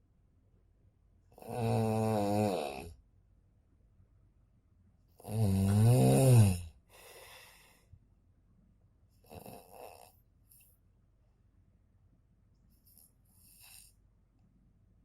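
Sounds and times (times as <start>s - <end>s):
person snoring loudly: 1.4s - 3.0s, 5.2s - 6.8s
soft breathy breath: 6.8s - 8.0s.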